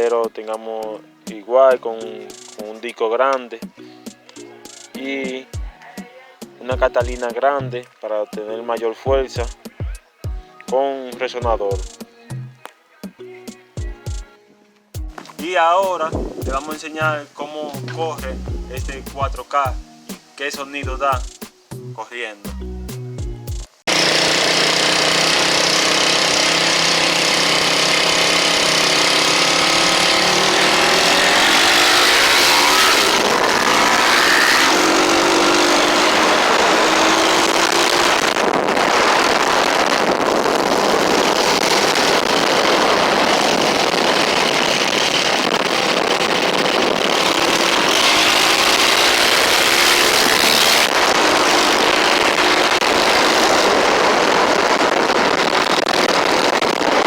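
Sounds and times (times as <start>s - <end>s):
motorcycle engine revving: 0.0s - 0.3s, 15.1s - 19.7s, 23.9s - 57.0s
steady rushing hiss: 0.0s - 3.0s, 3.6s - 7.4s, 15.0s - 57.0s.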